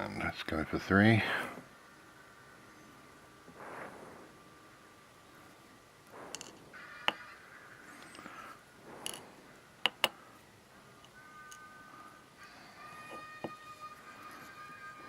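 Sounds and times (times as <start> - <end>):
small metallic clicks and taps: 9.8 - 10.2.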